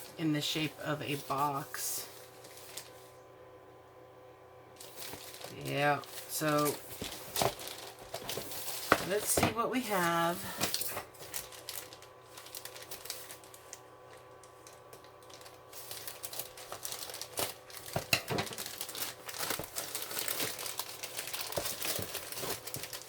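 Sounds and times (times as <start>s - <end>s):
package wrapping crinkling and tearing: 4.8s - 9.4s, 10.0s - 23.0s.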